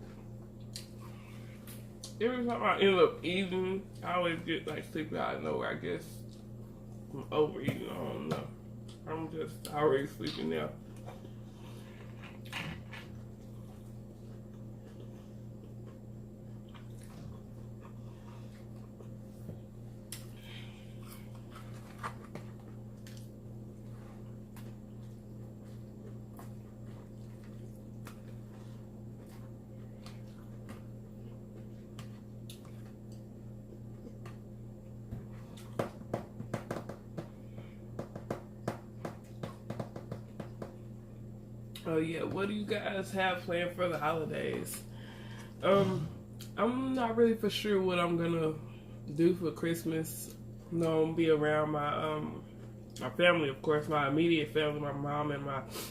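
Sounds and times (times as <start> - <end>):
chewing salad: 0.0 - 2.2, 10.3 - 35.8
steady low hum: 0.0 - 55.9.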